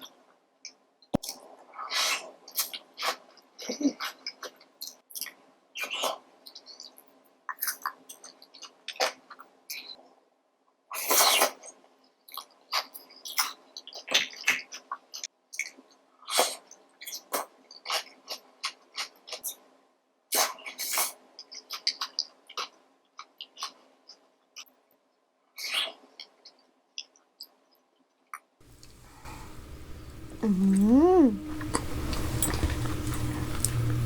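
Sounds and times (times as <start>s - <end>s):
slurping: 28.6s - 34.0s.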